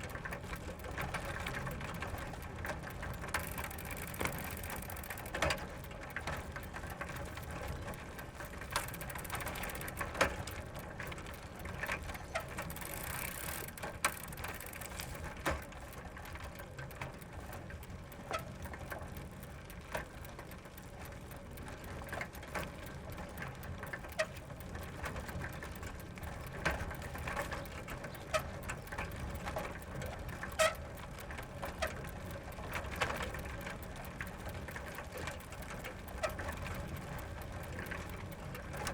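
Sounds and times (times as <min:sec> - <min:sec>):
bicycle chain clicking: 0:00.0 - 0:38.9
bicycle tyres rolling: 0:00.0 - 0:38.9.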